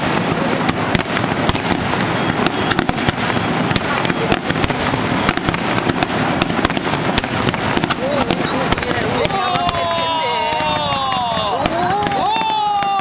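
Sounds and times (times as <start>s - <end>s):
fireworks bangs and crackles: 0.0s - 13.0s.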